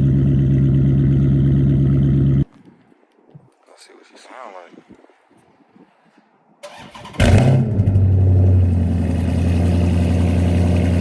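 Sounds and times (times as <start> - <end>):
car engine starting and idling: 0.0 - 2.5, 6.6 - 11.0.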